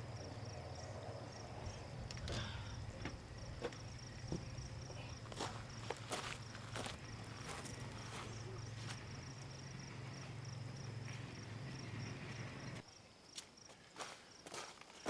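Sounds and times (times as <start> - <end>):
steady low hum: 0.0 - 12.8
insects chirping: 0.0 - 15.0
footsteps: 3.0 - 9.1.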